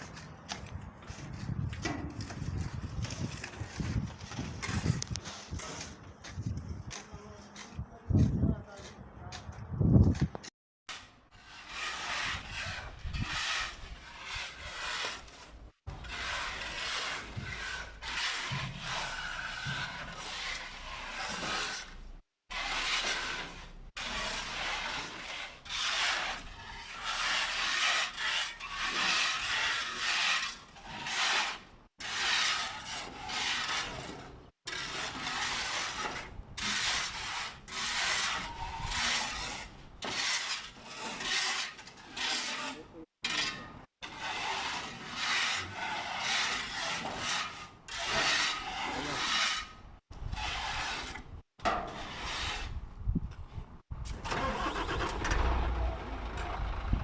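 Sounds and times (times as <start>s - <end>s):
plastering tool scraping wall: 0.0s - 7.1s, 10.0s - 52.8s.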